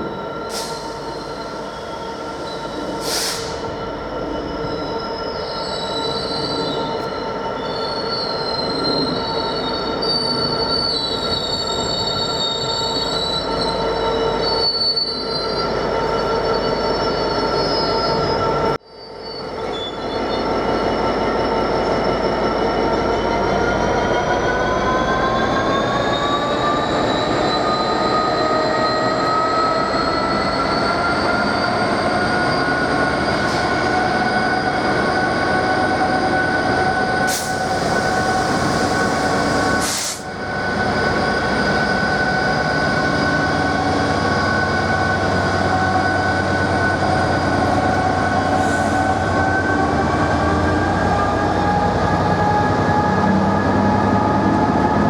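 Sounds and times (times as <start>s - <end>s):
train rumble on rails: 0.0s - 55.0s.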